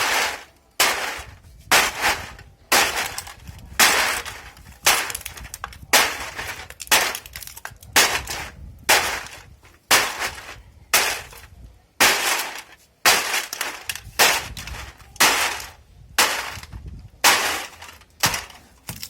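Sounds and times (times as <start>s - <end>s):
heavy tool pounding with crunching: 0.0s - 19.0s.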